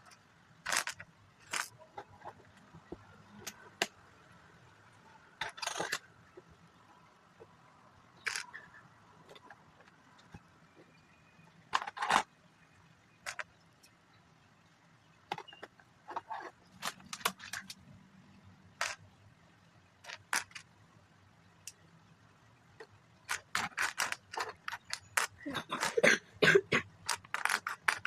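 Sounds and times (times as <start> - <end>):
plastic bricks clicking together: 0.6 - 1.7, 8.2 - 8.6, 18.8 - 19.0, 20.0 - 20.7, 22.8 - 26.0, 27.0 - 28.0.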